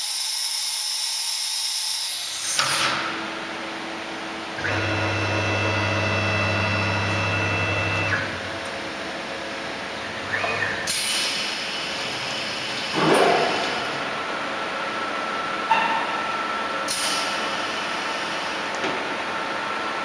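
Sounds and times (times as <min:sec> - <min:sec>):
router spindle whine: 0:04.6 - 0:14.1.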